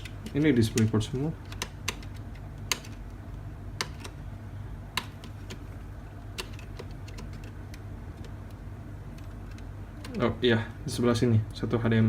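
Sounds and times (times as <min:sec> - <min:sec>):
light clicks and taps: 0:00.0 - 0:03.0
steady low hum: 0:00.0 - 0:12.0.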